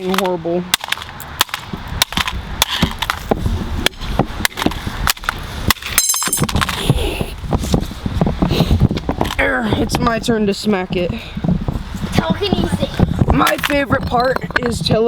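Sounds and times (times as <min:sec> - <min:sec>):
rattling clatter: 0:12.4 - 0:15.0.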